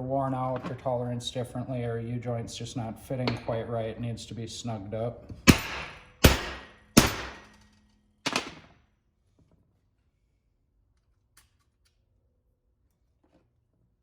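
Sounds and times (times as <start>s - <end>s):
hammer tapping on steel: 5.5s - 7.6s.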